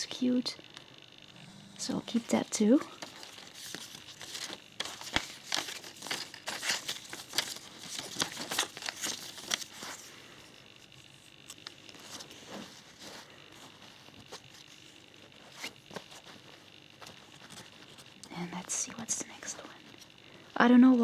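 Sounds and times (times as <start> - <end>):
plastic wrapper crinkling: 3.0 - 10.0.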